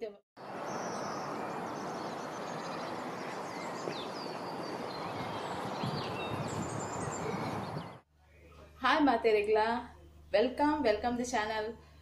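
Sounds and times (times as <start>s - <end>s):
birds chirping: 0.4s - 8.0s.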